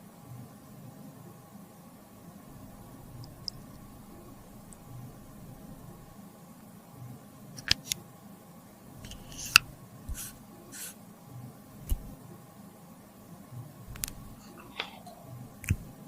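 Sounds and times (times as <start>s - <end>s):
sharp clicks and taps: 13.9s - 15.0s, 15.6s - 15.9s.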